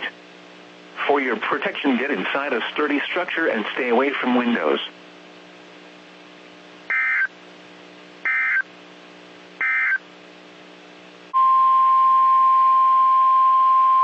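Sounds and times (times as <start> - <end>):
digital data tone bursts: 6.9 - 7.3
steady warning alarm tone: 6.9 - 7.3, 8.3 - 8.6, 9.6 - 10.0.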